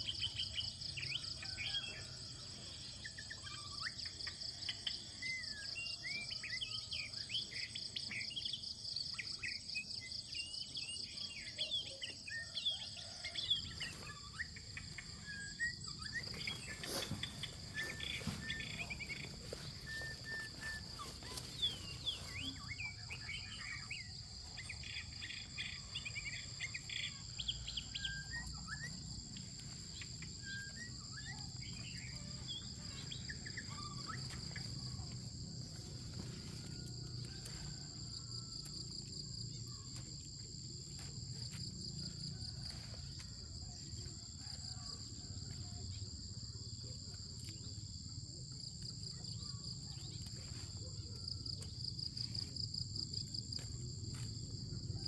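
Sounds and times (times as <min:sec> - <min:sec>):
insects trilling: 0:00.0 - 0:55.0
birds chirping: 0:09.5 - 0:37.8.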